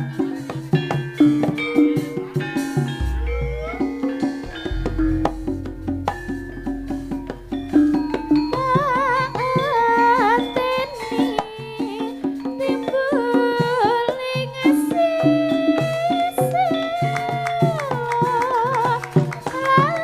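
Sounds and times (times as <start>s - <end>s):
drum strokes: 2.9s - 13.1s
short low notes: 3.0s - 11.9s
vibrato melody line: 3.0s - 13.3s.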